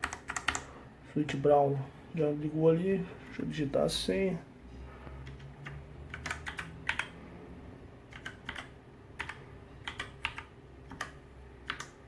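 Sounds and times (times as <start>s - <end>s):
mechanical keyboard keystrokes: 0.0s - 0.7s, 5.2s - 7.1s, 8.1s - 12.0s.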